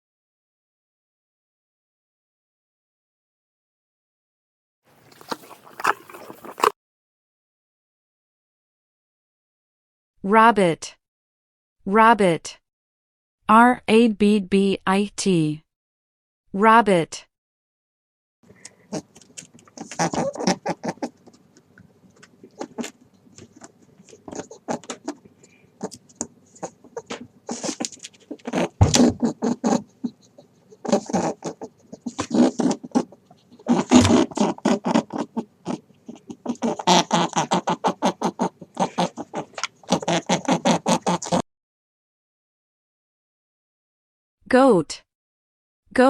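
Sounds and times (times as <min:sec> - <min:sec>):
rabbit clicking and patter: 0:18.6 - 0:25.2.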